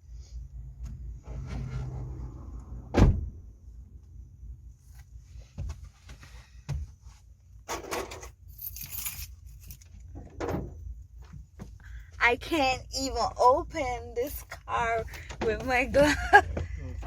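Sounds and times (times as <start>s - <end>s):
dull thump: 2.9s - 3.4s.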